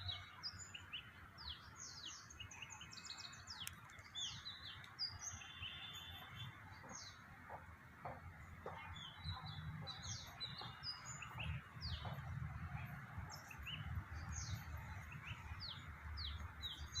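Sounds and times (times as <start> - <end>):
small birds chirping: 0.0 - 17.0.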